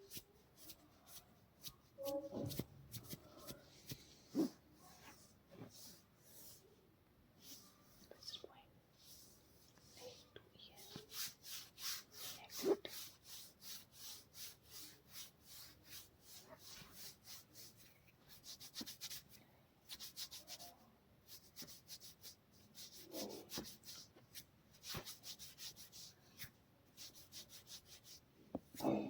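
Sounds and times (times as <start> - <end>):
hands rubbing over skin: 0.1 - 6.0, 10.8 - 20.7, 21.3 - 28.2.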